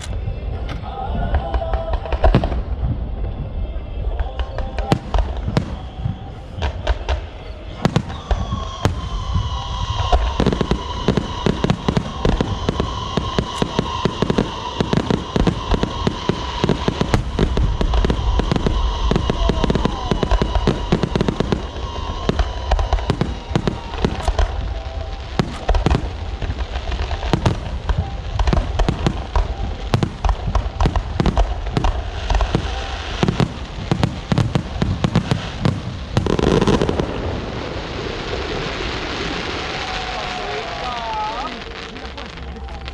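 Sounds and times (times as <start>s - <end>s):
fireworks bangs and crackles: 0.0s - 42.9s.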